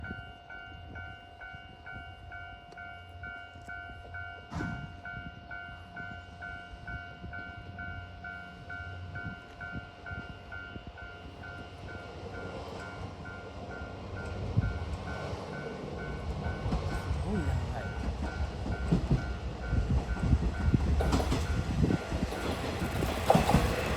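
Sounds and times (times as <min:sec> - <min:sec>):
approaching train rumble: 0:00.0 - 0:23.9
level-crossing warning bell ringing: 0:00.0 - 0:23.9.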